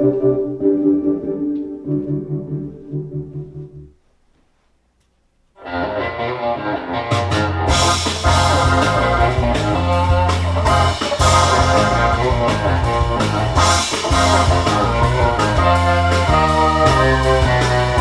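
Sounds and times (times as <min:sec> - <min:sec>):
rock music through loudspeakers: 0:05.6 - 0:18.0.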